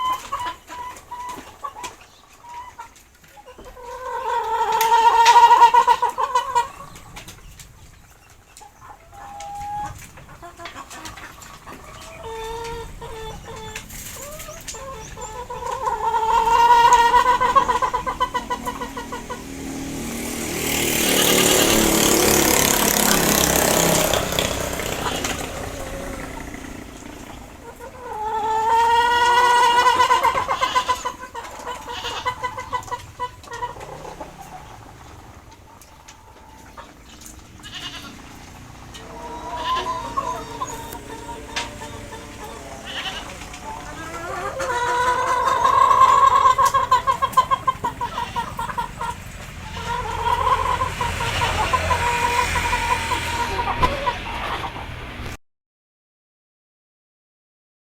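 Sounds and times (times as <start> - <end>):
chicken calling: 0.0 - 55.4
chicken clucking: 0.0 - 55.4
rooster crowing: 38.0 - 48.9, 49.6 - 54.5.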